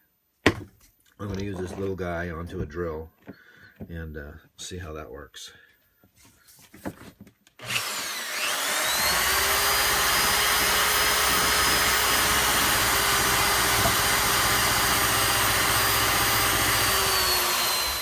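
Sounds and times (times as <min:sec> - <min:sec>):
electric drill whining: 0:07.6 - 0:18.0.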